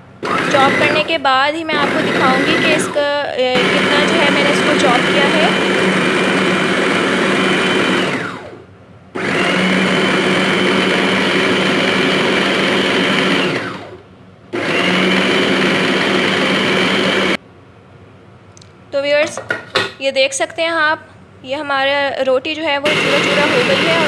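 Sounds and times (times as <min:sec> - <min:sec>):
electric food chopper motor: 0:00.2 - 0:08.6, 0:09.2 - 0:14.0, 0:14.6 - 0:17.4, 0:22.8 - 0:24.0.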